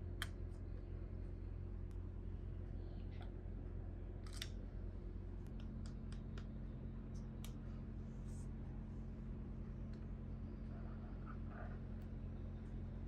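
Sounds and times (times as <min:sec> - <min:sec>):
steady low hum: 0:00.0 - 0:13.0
light clicks of toy pieces: 0:04.2 - 0:04.6.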